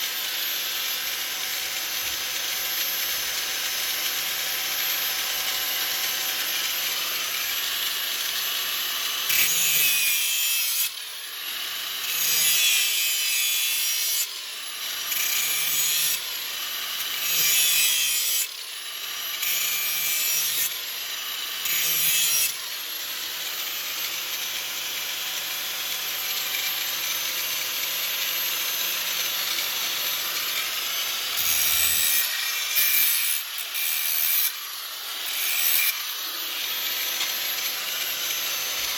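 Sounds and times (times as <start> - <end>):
electric grinder running: 0.0 - 38.9
grinder disc rasping on metal: 28.3 - 38.9.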